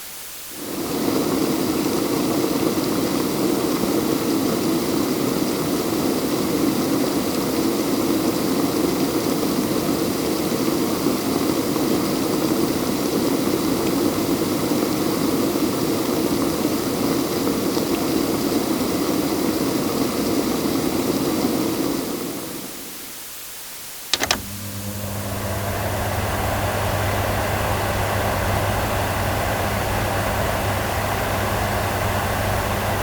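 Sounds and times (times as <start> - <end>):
sharp clicks: 24.1 - 24.9
appliance motor rushing: 24.1 - 33.0.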